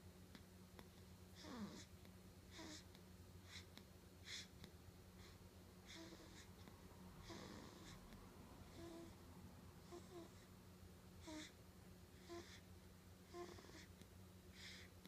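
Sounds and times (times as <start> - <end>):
baby snoring and snorting: 1.4 - 1.9, 2.5 - 2.9, 5.9 - 6.5, 7.2 - 8.1, 8.7 - 9.2, 9.8 - 10.4, 11.2 - 11.5, 12.2 - 12.6, 13.3 - 13.9
baby whimpering: 5.9 - 6.5, 7.2 - 8.0, 9.8 - 10.4, 11.2 - 11.5, 12.2 - 12.6, 13.3 - 13.9.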